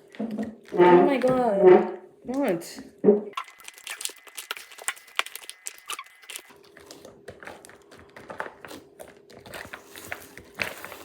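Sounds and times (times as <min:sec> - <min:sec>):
sticky slime crackling and popping: 0:03.4 - 0:11.0.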